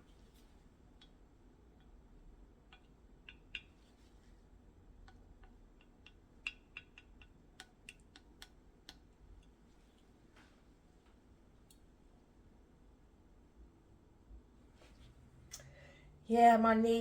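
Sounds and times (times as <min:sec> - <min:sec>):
faint small clicks and ticks: 0:02.6 - 0:04.4, 0:05.0 - 0:11.9.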